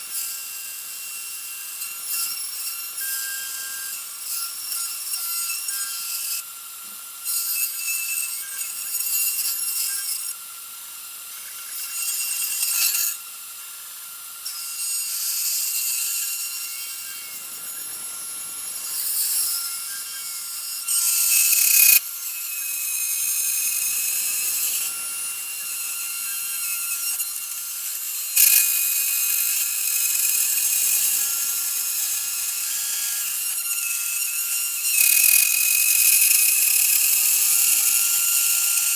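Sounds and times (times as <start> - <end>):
router cutter chewing material: 0.0 - 38.9.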